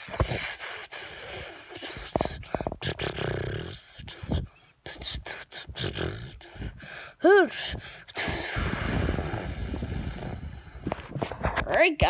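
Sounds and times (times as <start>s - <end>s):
mouth hiss: 0.0s - 2.4s, 4.0s - 6.8s, 8.1s - 11.2s
mouth clicks and pops: 0.0s - 6.8s, 7.6s - 11.7s.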